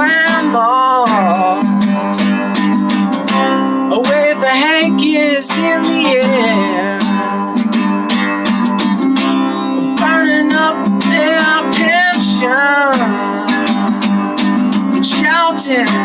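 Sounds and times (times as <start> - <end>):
person singing: 0.0 - 2.6, 3.9 - 7.5, 9.7 - 16.0
rock song with acoustic guitar: 0.0 - 16.0.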